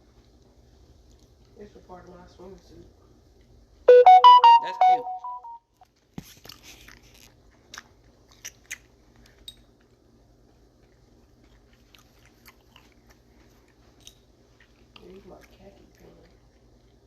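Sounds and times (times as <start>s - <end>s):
chewing close to microphone: 6.2s - 17.0s.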